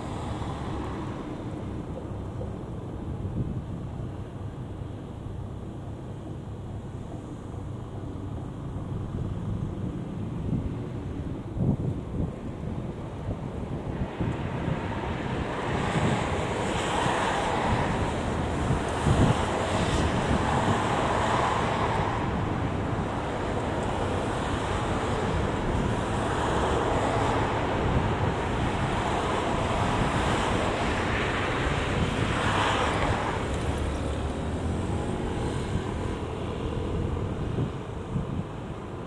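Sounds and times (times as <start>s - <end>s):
road traffic: 0.0s - 5.6s, 9.2s - 39.0s
wind buffeting microphone: 7.8s - 39.0s.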